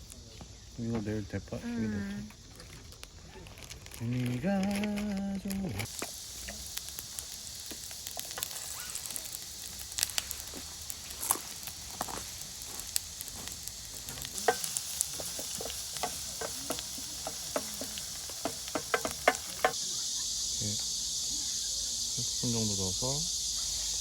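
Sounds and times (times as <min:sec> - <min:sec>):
oil sizzling in a pan: 0:04.2 - 0:24.0
utensil stirring clicks and scrapes: 0:05.8 - 0:19.8.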